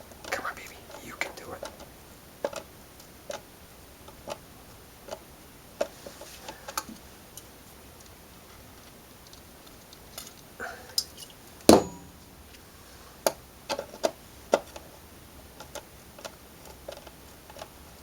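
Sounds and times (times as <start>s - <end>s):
metal clack with short ring: 11.7s - 12.2s.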